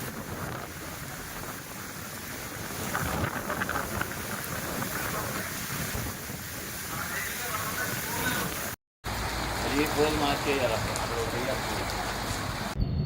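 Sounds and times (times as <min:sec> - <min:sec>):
heavy rain falling: 0:00.0 - 0:12.8
wind rumbling on microphone: 0:00.0 - 0:13.0.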